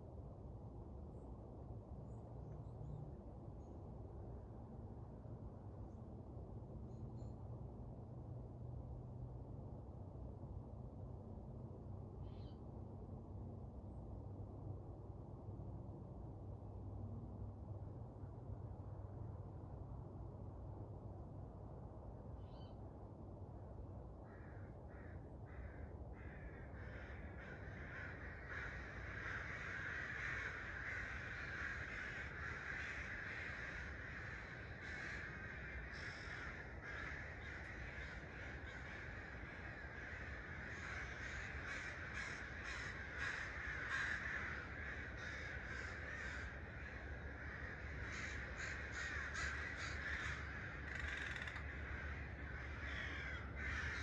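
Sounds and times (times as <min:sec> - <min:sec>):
low steady rumble: 0:00.0 - 0:54.0
harsh cawing calls: 0:24.3 - 0:54.0
birds calling: 0:26.9 - 0:54.0.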